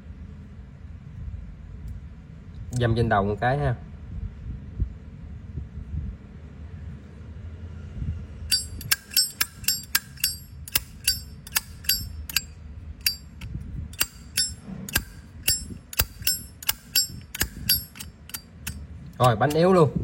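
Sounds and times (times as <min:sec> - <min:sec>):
metal watch clinking: 0:08.5 - 0:19.9.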